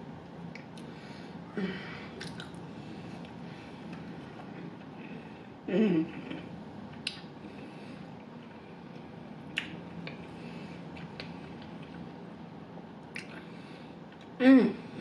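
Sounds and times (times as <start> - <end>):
faint room hum: 0.0 - 15.0
chewing clicks and smacks: 2.2 - 2.6, 13.1 - 13.4.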